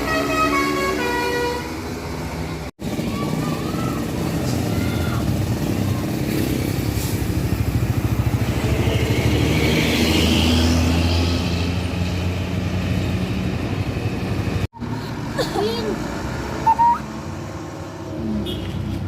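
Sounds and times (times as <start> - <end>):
diesel bus engine passing: 0.0 - 19.0
hiss of air and tyres: 6.8 - 7.5.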